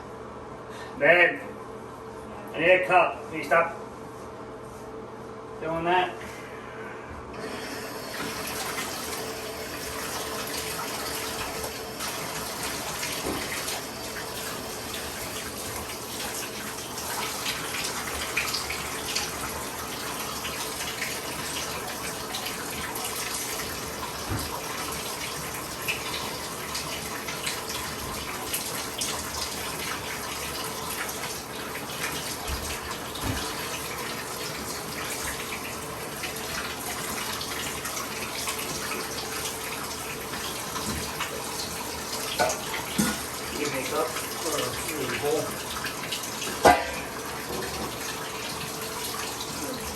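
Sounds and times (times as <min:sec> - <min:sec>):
water pouring into bathtub: 0:07.4 - 0:49.9
small splashes and knocks: 0:42.3 - 0:43.3, 0:46.5 - 0:48.0.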